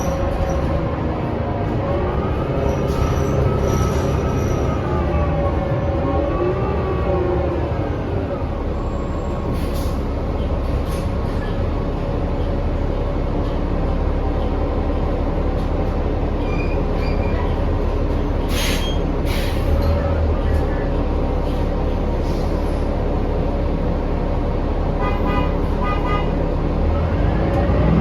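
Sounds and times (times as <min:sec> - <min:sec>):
bus drivetrain rumble: 0:00.0 - 0:28.0.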